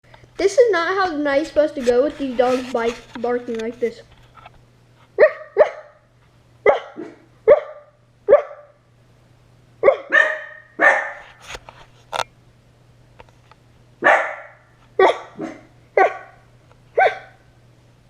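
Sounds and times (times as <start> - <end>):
dogs barking: 5.2 - 6.0, 6.6 - 8.8, 9.8 - 11.3, 14.0 - 16.4, 17.0 - 17.4.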